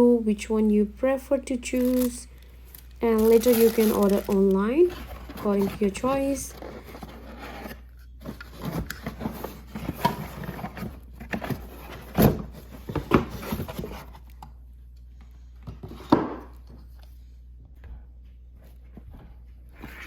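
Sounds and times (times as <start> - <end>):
packaging rustling and scraping: 1.7 - 14.3.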